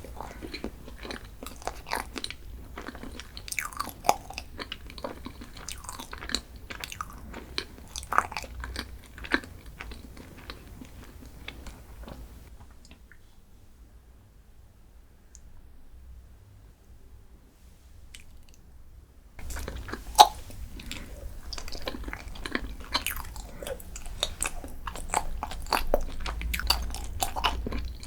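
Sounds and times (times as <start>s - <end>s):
chewing crunchy food: 0.0s - 13.2s, 19.4s - 28.0s.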